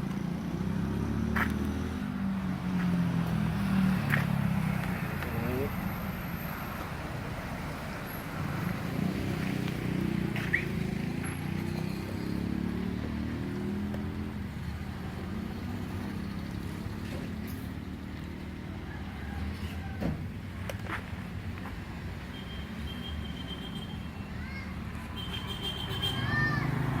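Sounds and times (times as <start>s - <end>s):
low rumble of traffic: 0.0s - 27.0s.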